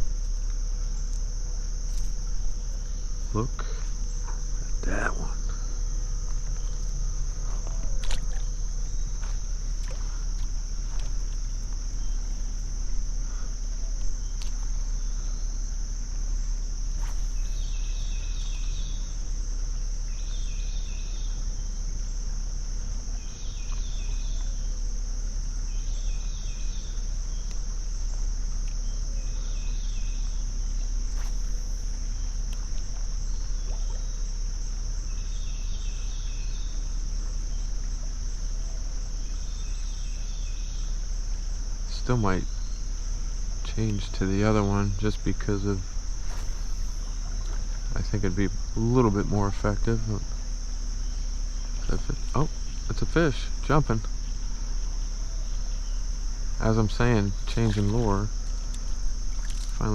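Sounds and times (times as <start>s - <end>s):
insects droning: 0.0s - 59.9s
low rumble: 30.6s - 35.3s, 45.0s - 52.9s.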